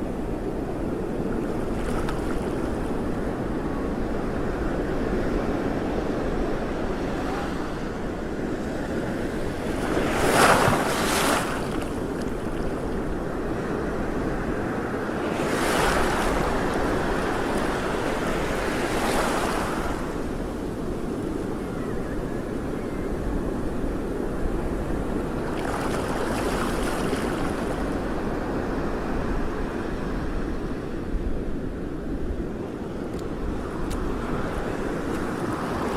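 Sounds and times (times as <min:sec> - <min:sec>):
wind rumbling on microphone: 0:00.0 - 0:35.9
wave splashing: 0:06.6 - 0:20.6, 0:24.7 - 0:28.1, 0:33.6 - 0:35.9.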